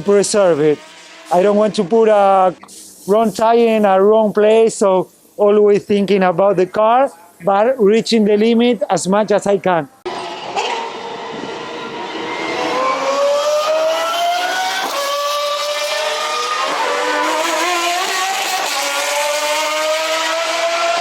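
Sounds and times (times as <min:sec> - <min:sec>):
car engine accelerating: 0:00.0 - 0:02.6, 0:10.1 - 0:21.0.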